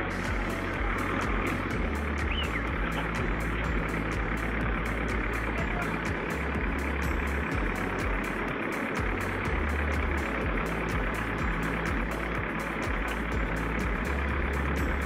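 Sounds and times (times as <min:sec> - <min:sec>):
background music with beat and bass: 0:00.0 - 0:15.0
heavy machine engine running: 0:00.0 - 0:15.0.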